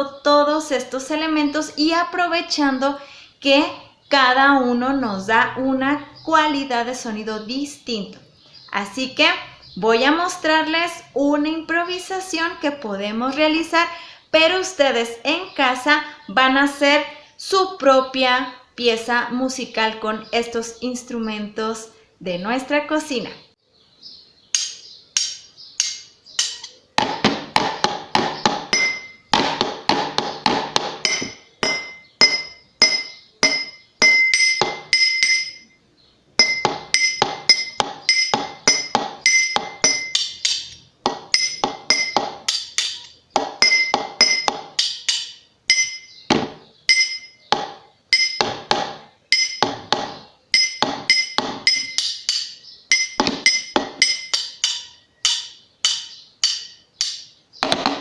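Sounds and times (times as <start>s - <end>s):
spoon and fork tapping glass: 24.6s - 26.8s, 28.1s - 29.3s, 31.0s - 35.8s, 36.4s - 46.3s, 46.9s - 49.9s, 50.5s - 58.0s.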